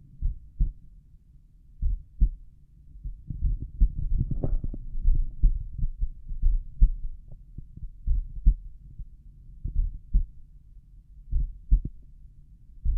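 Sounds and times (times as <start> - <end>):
heartbeat through stethoscope: 0.2 - 0.8, 1.8 - 2.4, 3.0 - 10.4, 11.3 - 12.0.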